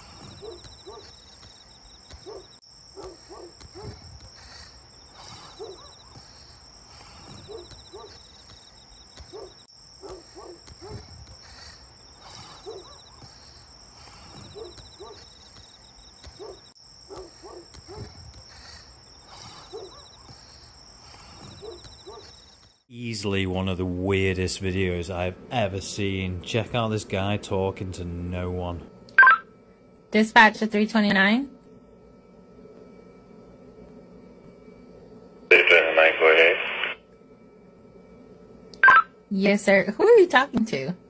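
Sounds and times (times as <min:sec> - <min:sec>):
rapid insect chirping: 0:00.0 - 0:22.9
cricket trill: 0:00.0 - 0:41.0.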